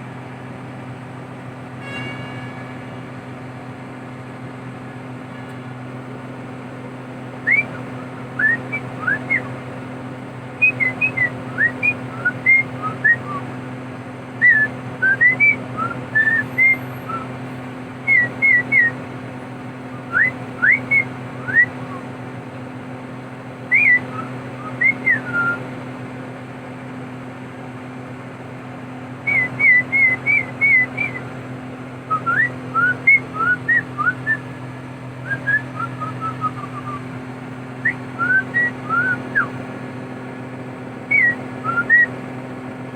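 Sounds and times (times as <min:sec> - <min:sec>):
low machine hum: 0:00.0 - 0:42.9
short chirping whistles: 0:07.5 - 0:09.5, 0:10.6 - 0:13.5, 0:23.7 - 0:25.6, 0:29.3 - 0:31.3, 0:37.8 - 0:39.6, 0:41.1 - 0:42.1.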